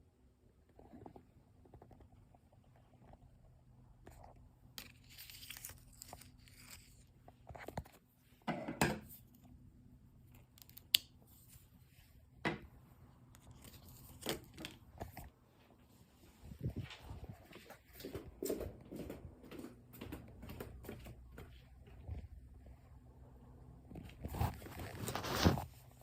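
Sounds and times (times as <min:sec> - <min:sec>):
handling rustling and scraping: 0:04.0 - 0:09.6, 0:13.2 - 0:18.6, 0:23.9 - 0:26.0.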